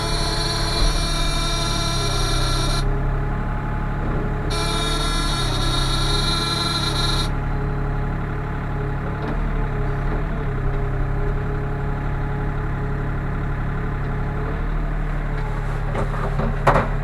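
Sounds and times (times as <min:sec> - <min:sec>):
high whine: 0:00.0 - 0:02.9, 0:04.5 - 0:07.4
diesel engine idling: 0:00.0 - 0:17.0.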